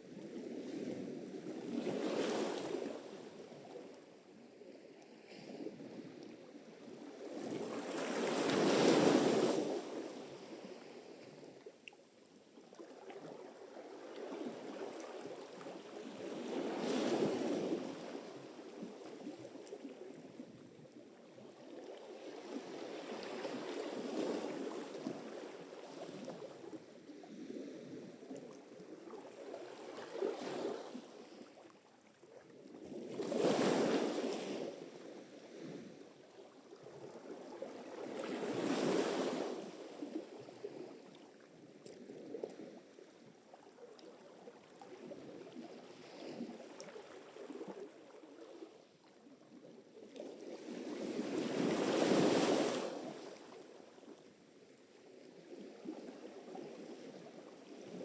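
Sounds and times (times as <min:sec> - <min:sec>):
waves breaking on shore: 0:51.0 - 0:53.5.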